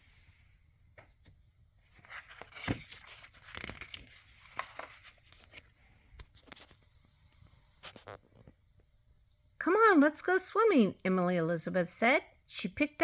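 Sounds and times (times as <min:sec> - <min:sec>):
paper rustling and crinkling: 0:01.2 - 0:06.8.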